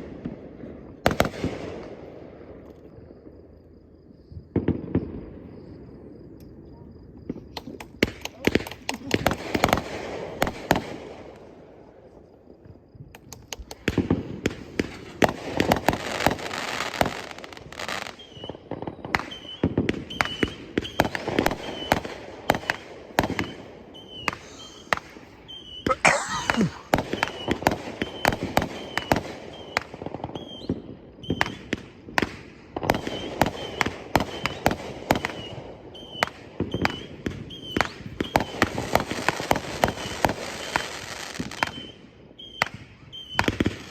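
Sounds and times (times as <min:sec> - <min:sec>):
fireworks popping and banging: 0:07.3 - 0:11.0, 0:13.1 - 0:35.5.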